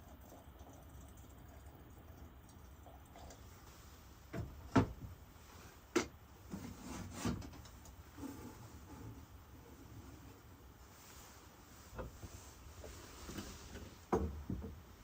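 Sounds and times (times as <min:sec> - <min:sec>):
objects knocking and clunking: 0:04.3 - 0:05.1, 0:12.9 - 0:14.9
soft rustling: 0:08.1 - 0:14.1.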